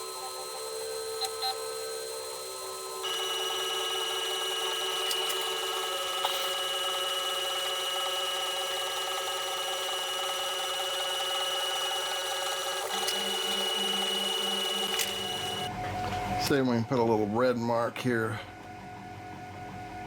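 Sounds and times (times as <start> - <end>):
stepper motors whining: 0.0 - 15.7.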